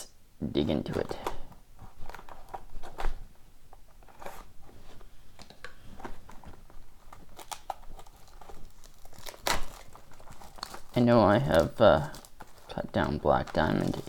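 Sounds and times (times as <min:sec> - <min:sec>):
plastic wrap crinkling and tearing: 0:00.9 - 0:03.1, 0:05.4 - 0:14.0.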